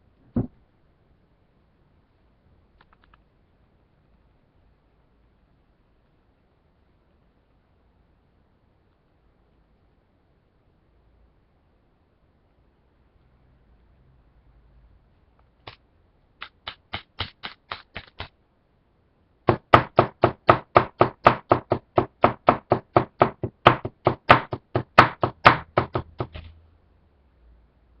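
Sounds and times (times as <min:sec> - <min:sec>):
rhythmic knocking: 0:19.5 - 0:26.4.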